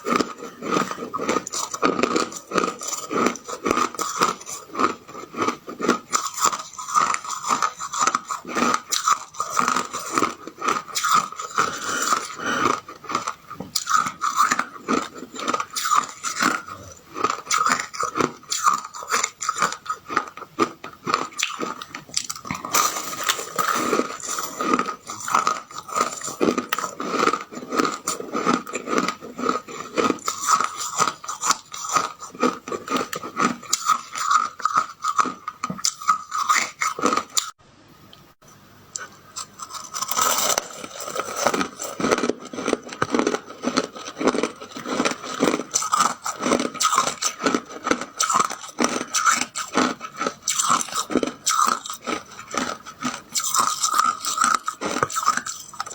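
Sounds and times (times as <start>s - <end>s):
person crunching ice: 0.0s - 37.5s, 39.4s - 55.9s.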